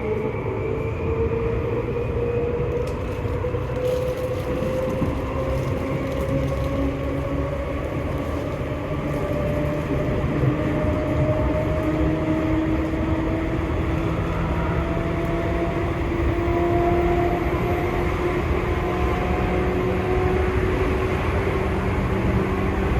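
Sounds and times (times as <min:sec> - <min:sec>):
train running rumble: 0:00.0 - 0:22.9.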